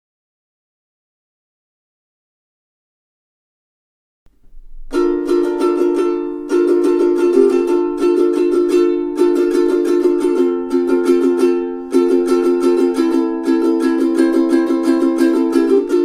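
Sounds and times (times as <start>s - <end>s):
ukulele strumming chords: 4.3s - 16.0s.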